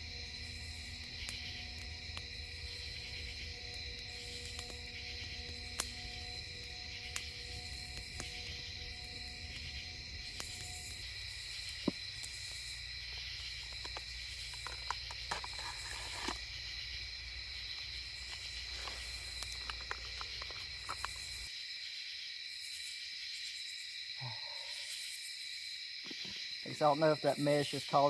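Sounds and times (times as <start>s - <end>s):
low hum: 0.0s - 21.5s
insects chirping: 0.0s - 28.0s.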